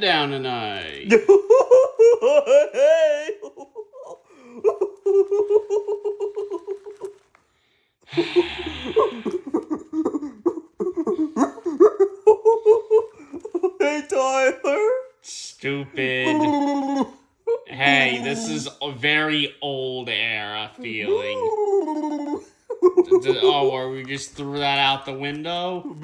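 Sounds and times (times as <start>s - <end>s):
high-pitched laughter: 1.1s - 7.3s, 8.2s - 14.8s, 16.1s - 18.7s, 20.8s - 23.9s.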